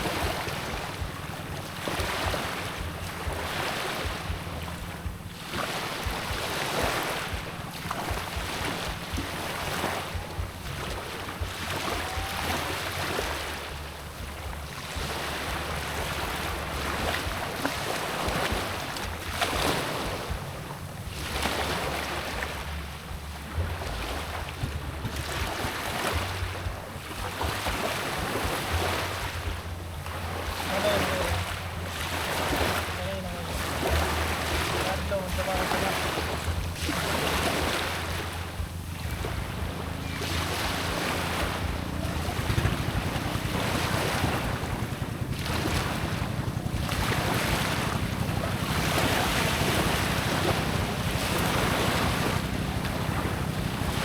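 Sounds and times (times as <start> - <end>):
sea waves surging: 0.0 - 54.0
wind rumbling on microphone: 0.0 - 54.0.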